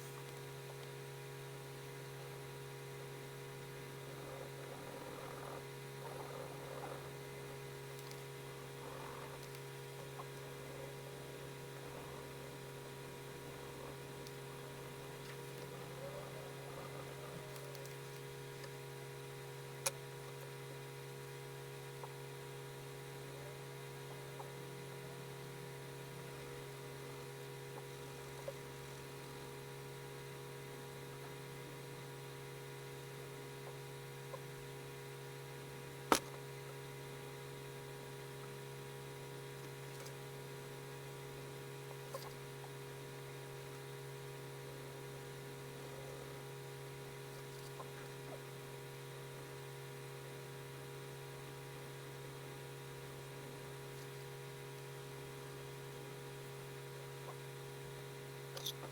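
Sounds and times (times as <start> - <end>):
electrical hum: 0.0 - 58.9
faint clicks: 7.9 - 8.3, 9.4 - 10.4.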